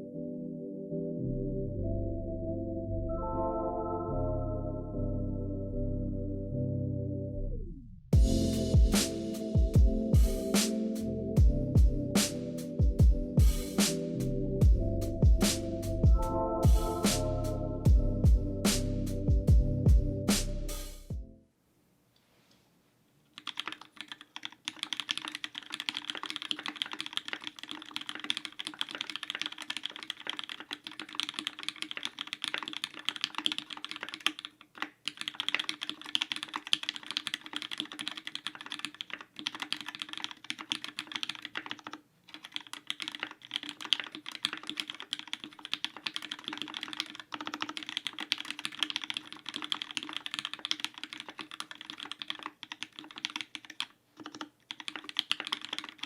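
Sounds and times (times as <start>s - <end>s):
mechanical keyboard typing: 23.3s - 56.0s.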